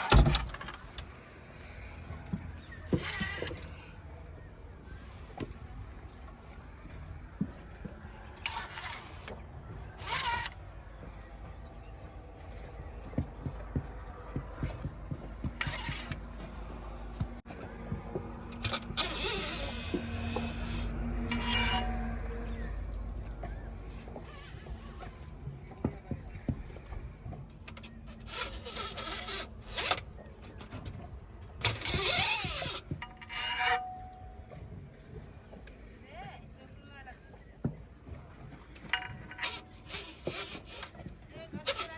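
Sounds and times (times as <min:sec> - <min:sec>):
creaking squeal: 0:02.6 - 0:03.9, 0:08.4 - 0:10.6, 0:15.6 - 0:16.2, 0:18.4 - 0:25.3, 0:27.6 - 0:31.0, 0:31.6 - 0:34.3, 0:38.8 - 0:41.9
hissing scraping bursts: 0:18.6 - 0:21.9, 0:27.7 - 0:30.9, 0:31.6 - 0:33.9, 0:38.8 - 0:41.9.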